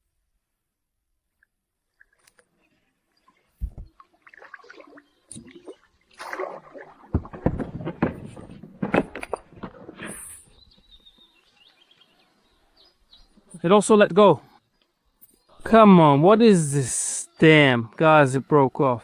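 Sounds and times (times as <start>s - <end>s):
knocks and scrapes of fishing gear: 3.6s - 4.0s, 7.0s - 10.5s
low thump in a boat: 3.6s - 4.0s, 7.1s - 9.3s.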